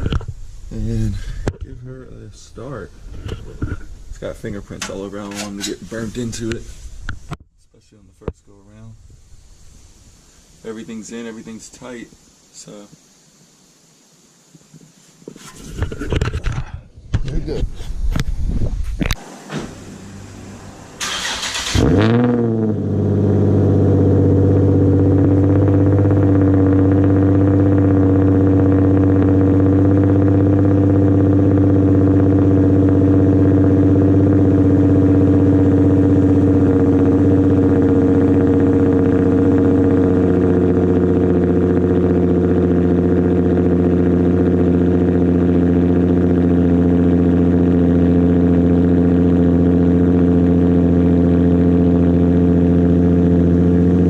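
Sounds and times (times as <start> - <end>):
car engine starting and idling: 0.0 - 6.6, 19.0 - 54.0.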